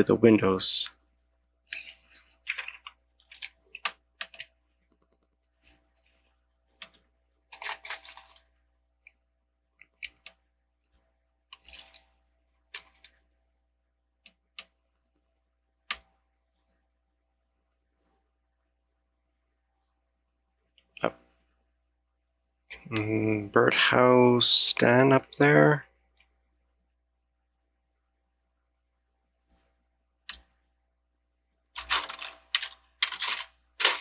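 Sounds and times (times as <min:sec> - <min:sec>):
plastic bricks clicking: 0:31.8 - 0:34.0.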